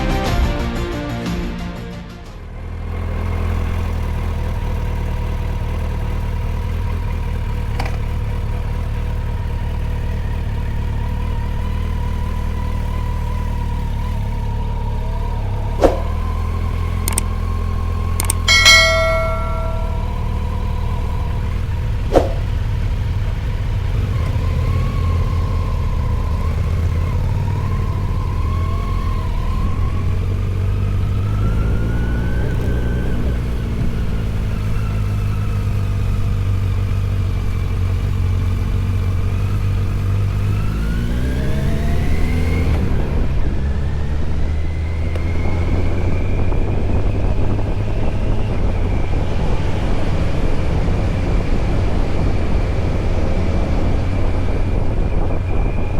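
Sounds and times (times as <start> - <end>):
motorcycle engine revving: 2.6 - 55.9
sharp click: 17.1 - 17.3.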